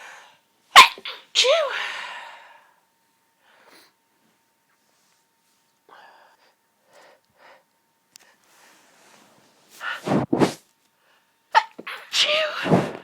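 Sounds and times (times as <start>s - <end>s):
person breathing: 3.4s - 4.0s, 5.9s - 10.2s.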